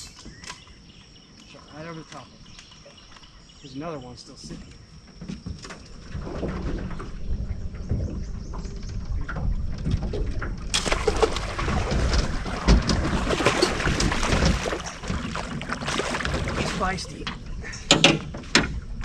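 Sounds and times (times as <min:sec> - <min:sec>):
water splashing and thrashing: 0:05.4 - 0:19.0
low steady hum: 0:06.0 - 0:19.0
sharp knocks: 0:10.7 - 0:16.8.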